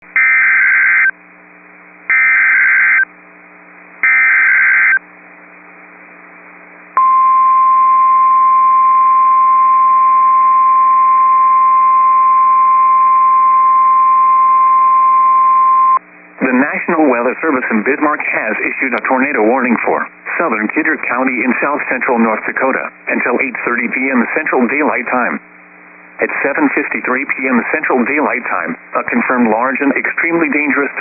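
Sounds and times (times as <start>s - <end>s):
steady alarm tone: 2.1s - 3.1s, 4.0s - 5.0s.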